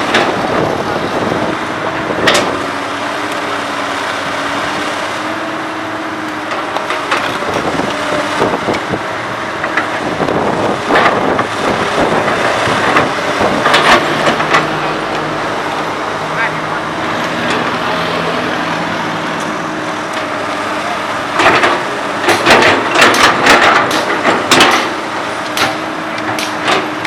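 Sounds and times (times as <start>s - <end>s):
excavator diesel engine under load: 0.0s - 27.0s
sharp knocks and crunches: 21.4s - 26.9s.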